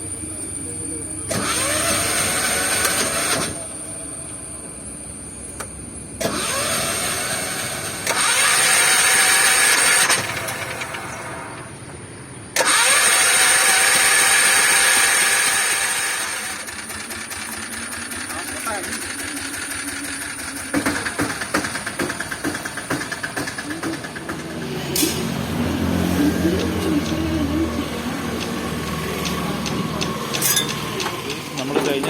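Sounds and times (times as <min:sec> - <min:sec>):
engine starter cranking: 0:01.2 - 0:03.7, 0:05.5 - 0:11.8, 0:12.5 - 0:25.4.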